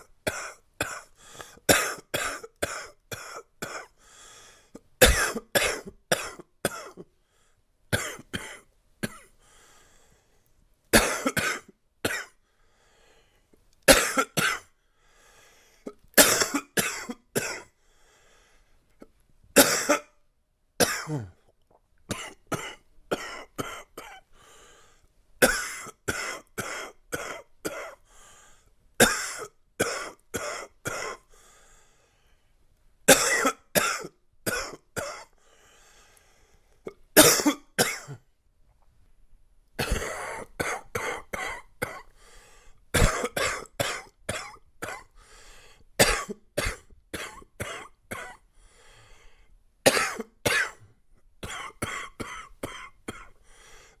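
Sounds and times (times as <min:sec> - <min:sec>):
man coughing: 0:01.7 - 0:03.9, 0:05.0 - 0:07.0, 0:11.0 - 0:12.3, 0:13.9 - 0:14.6, 0:16.2 - 0:17.7, 0:19.6 - 0:20.1, 0:20.8 - 0:21.4, 0:25.4 - 0:28.0, 0:29.0 - 0:31.2, 0:33.1 - 0:35.3, 0:37.2 - 0:38.2, 0:39.8 - 0:42.0, 0:43.0 - 0:45.1, 0:46.0 - 0:48.4, 0:49.9 - 0:50.8.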